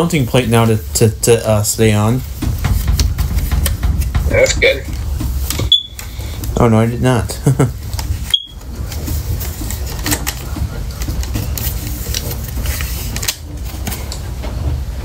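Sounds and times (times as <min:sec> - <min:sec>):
steady low rumble: 0:14.4 - 0:15.0.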